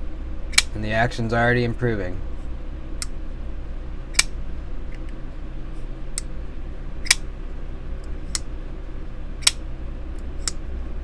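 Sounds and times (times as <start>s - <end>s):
steady low hum: 0.0s - 11.0s
folding knife metallic clicks: 0.5s - 0.8s, 4.1s - 4.3s, 7.0s - 7.2s.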